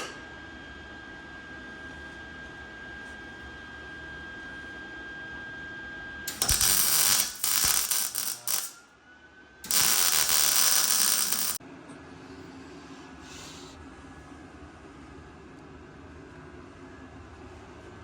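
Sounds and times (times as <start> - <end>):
angle grinder cutting metal: 6.3 - 8.8, 9.7 - 11.6
grinder motor whine: 9.6 - 11.6.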